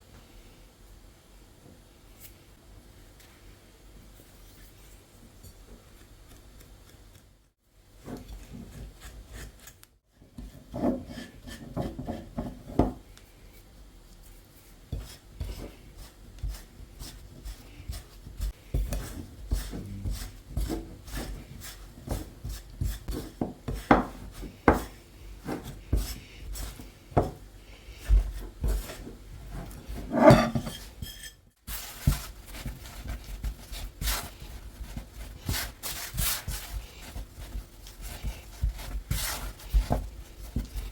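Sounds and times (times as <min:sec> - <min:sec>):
dough scraping in a bowl: 0:10.4 - 0:13.6, 0:14.5 - 0:40.9.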